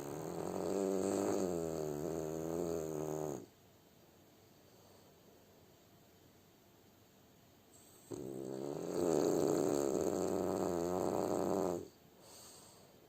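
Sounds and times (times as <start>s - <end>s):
dog snoring: 0.0s - 3.5s, 8.0s - 12.8s.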